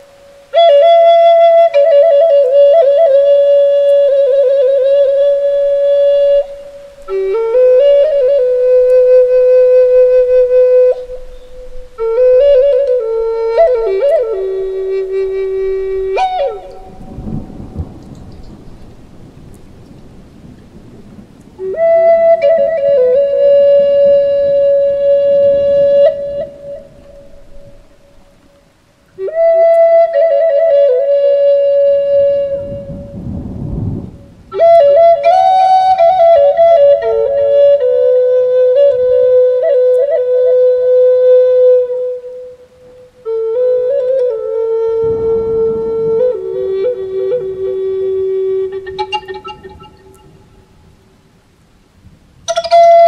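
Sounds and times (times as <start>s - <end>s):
flute playing slow phrase: 0.0s - 19.0s, 21.6s - 51.1s, 52.5s - 53.0s
low thunder rumble: 15.4s - 28.4s, 32.4s - 34.6s.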